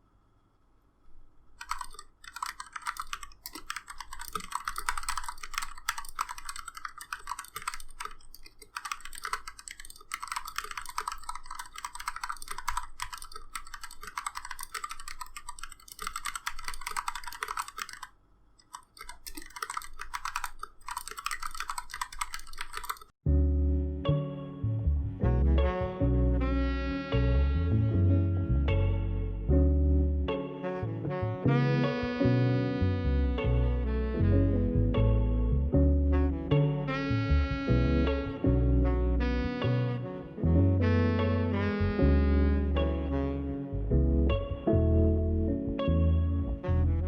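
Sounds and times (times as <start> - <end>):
mechanical keyboard typing: 1.6 - 23.2.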